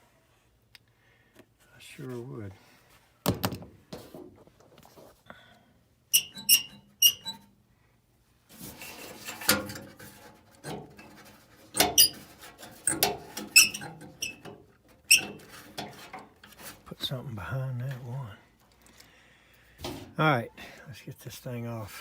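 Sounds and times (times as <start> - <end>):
metal cabinet squeaking: 6.1 - 7.4, 8.7 - 16.9.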